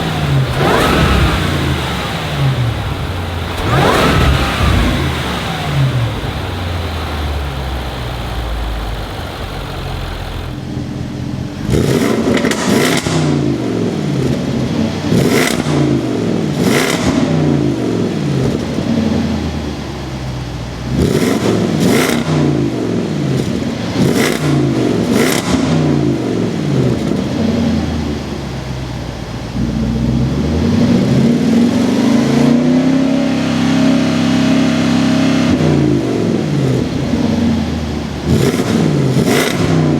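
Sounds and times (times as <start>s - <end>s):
exhaust crackles: 0.0s - 13.3s
car engine accelerating hard: 0.0s - 39.9s.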